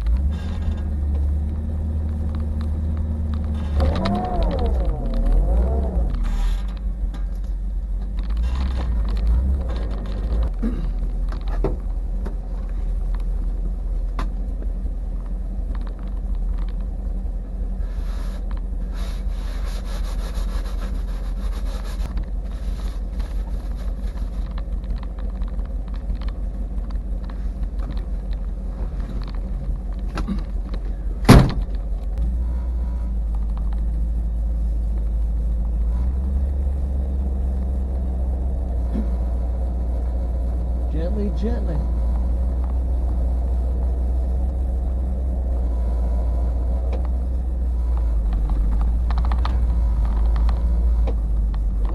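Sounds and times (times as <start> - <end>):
car engine and road rumble: 0.0 - 51.9.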